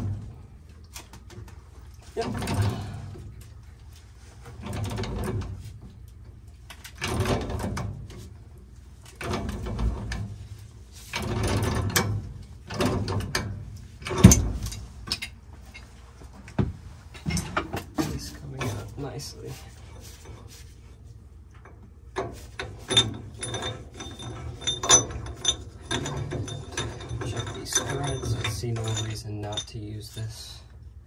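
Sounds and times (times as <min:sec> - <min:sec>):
metal threads grinding and scraping: 0:17.0 - 0:30.5.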